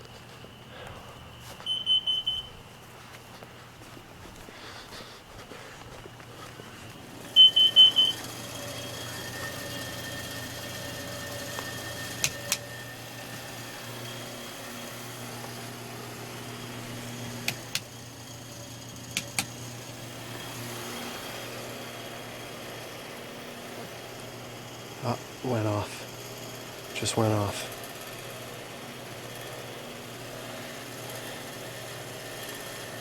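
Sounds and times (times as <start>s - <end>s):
engine hum: 0.0s - 25.2s
alarm beeping: 1.6s - 2.6s, 7.3s - 10.5s
sharp clicks: 12.2s - 12.6s, 17.4s - 17.9s, 19.1s - 19.5s.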